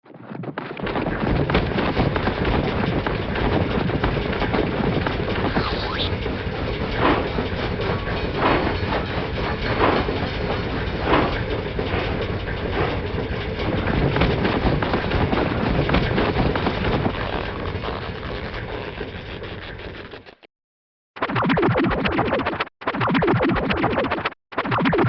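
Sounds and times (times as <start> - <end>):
loud rumbling noise: 0.4 - 19.2
sharp clack: 0.6 - 20.4.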